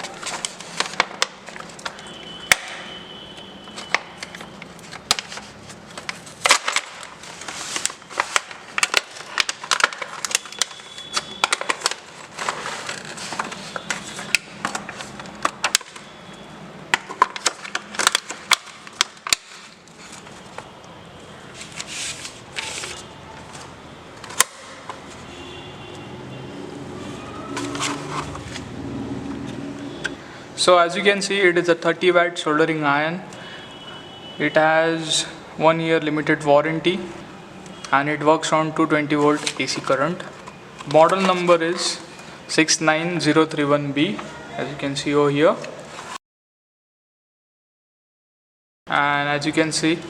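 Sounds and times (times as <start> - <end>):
packaging clicking and rustling: 0.0 - 2.9, 3.7 - 25.2.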